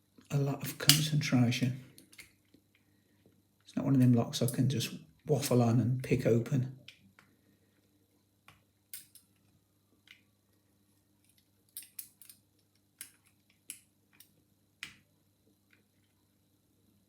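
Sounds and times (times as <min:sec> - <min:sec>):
faint metallic lock picking clicks: 0:08.9 - 0:09.3, 0:11.7 - 0:12.4, 0:13.0 - 0:15.0.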